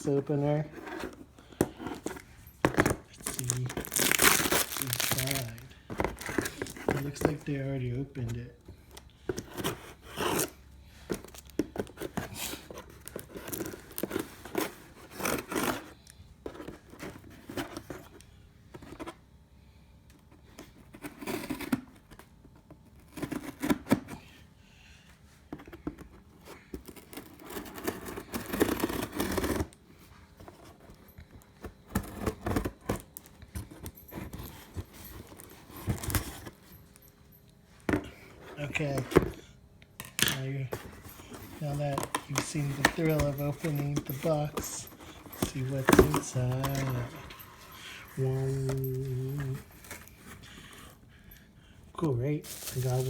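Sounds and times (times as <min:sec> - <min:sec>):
cardboard scraping: 0:00.0 - 0:08.4, 0:40.4 - 0:51.0, 0:52.4 - 0:53.0.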